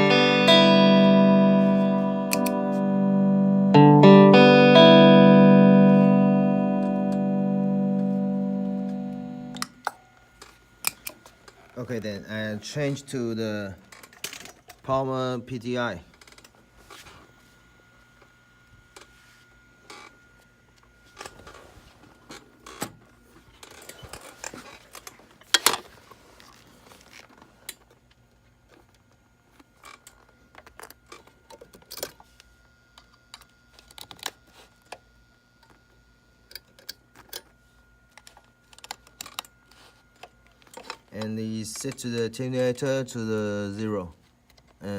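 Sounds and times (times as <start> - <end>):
faint steady hum: 0.0 - 44.9
cables and gear being handled: 22.3 - 32.3.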